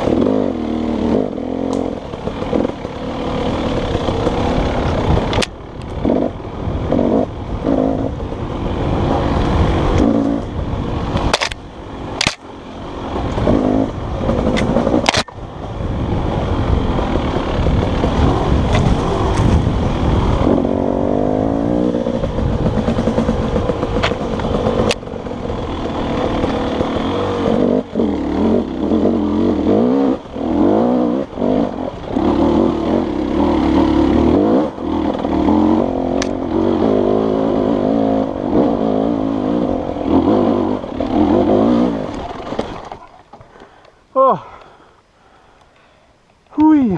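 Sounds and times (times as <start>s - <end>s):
dirt bike engine revving: 0.0s - 43.1s.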